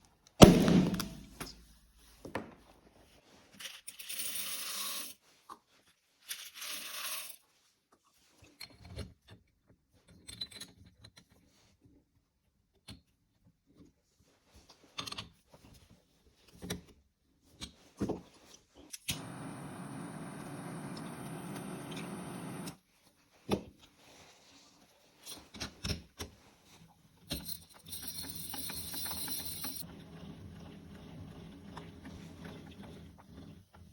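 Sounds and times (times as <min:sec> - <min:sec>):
steady hiss: 0:19.1 - 0:22.8.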